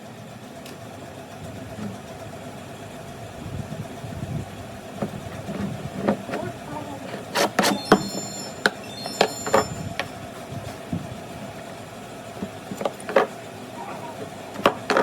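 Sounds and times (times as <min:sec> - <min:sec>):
objects knocking and clicking: 0:12.4 - 0:13.4, 0:14.5 - 0:15.0.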